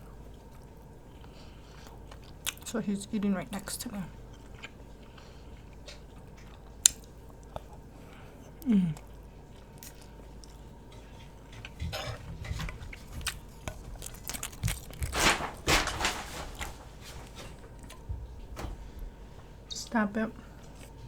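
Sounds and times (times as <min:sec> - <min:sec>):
person chewing crunchy food: 0:00.0 - 0:02.8, 0:04.1 - 0:15.8, 0:16.5 - 0:18.4, 0:20.5 - 0:21.0.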